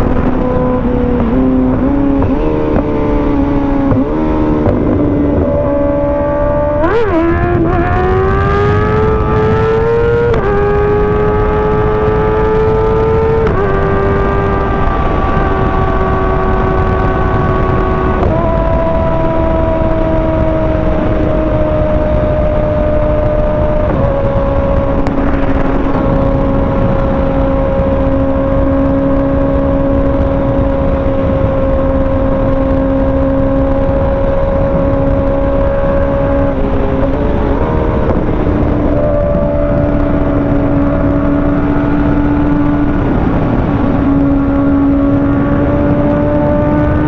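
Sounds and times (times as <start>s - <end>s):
motorcycle engine running: 0.0s - 47.0s
wind and road noise: 0.0s - 47.0s.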